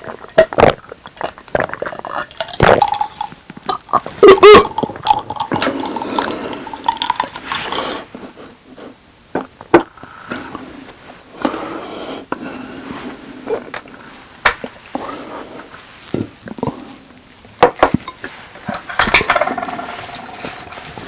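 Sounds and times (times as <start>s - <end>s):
utensils clinking against dish: 18.0s - 21.0s.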